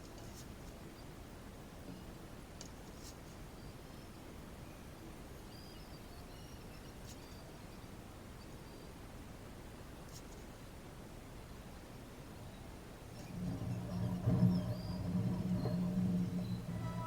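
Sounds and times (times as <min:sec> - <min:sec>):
faint steady background noise: 0:00.0 - 0:17.0.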